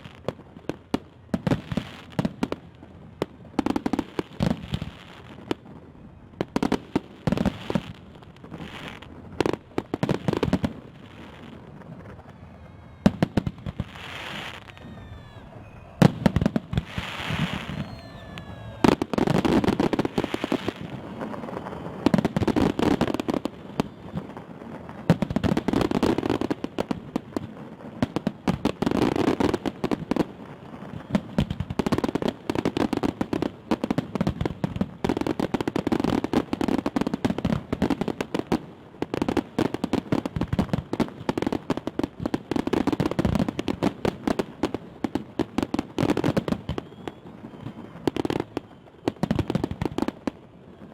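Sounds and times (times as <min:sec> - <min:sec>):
fireworks crackling: 0:00.0 - 0:50.9
fireworks booms: 0:06.4 - 0:50.9
falling firework whistles: 0:10.2 - 0:24.5, 0:30.6 - 0:31.7, 0:46.0 - 0:50.9.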